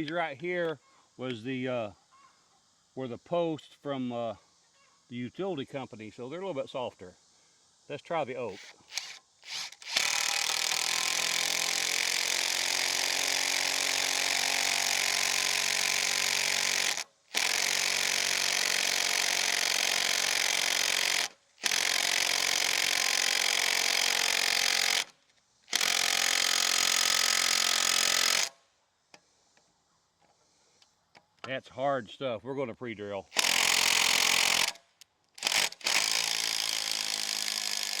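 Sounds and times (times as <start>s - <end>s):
power drill driving screw into wood: 8.5s - 28.6s, 33.3s - 38.0s.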